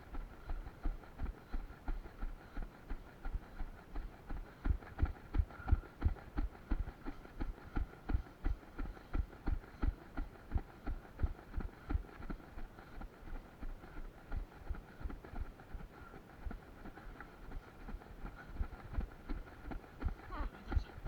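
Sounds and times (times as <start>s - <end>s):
running footsteps: 0.0s - 21.0s.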